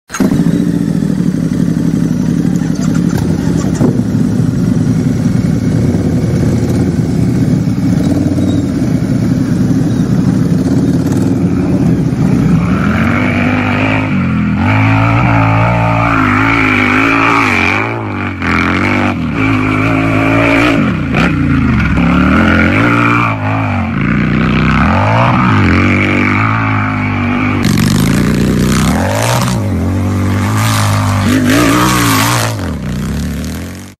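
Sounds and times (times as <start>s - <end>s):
motorcycle engine idling and revving: 0.0s - 33.9s.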